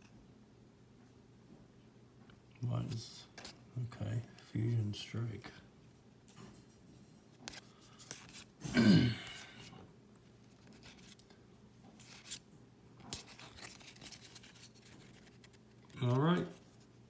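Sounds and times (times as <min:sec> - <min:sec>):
trading cards rustling and sliding: 0:07.4 - 0:08.6, 0:10.4 - 0:11.3, 0:12.0 - 0:12.4, 0:13.0 - 0:16.9.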